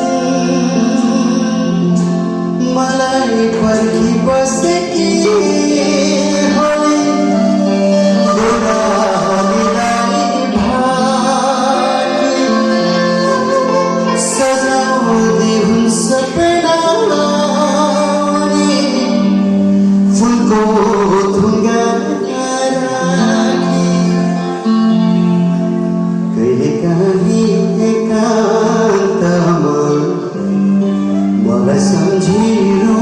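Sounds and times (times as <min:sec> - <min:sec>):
live band playing a song: 0:00.0 - 0:33.0.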